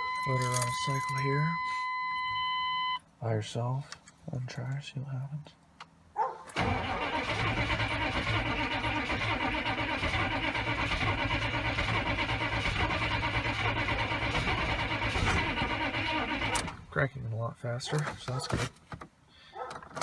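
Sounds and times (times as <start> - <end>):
starter cranking engine: 6.6 - 16.7.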